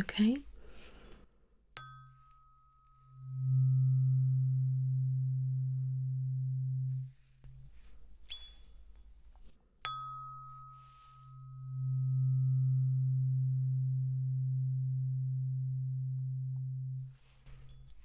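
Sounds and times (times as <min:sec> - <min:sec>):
tuning fork ping: 0:01.8 - 0:07.6, 0:09.8 - 0:18.0
steady low hum: 0:03.1 - 0:08.2, 0:11.4 - 0:18.0.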